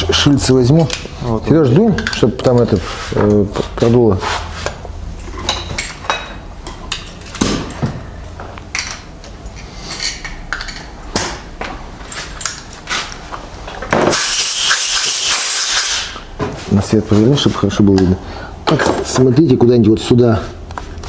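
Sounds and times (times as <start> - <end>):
compressed air blast: 14.0 - 16.2.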